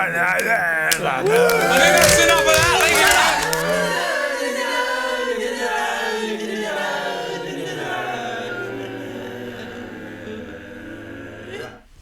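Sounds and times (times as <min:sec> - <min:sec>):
a cappella voices singing chord: 0:03.2 - 0:12.0.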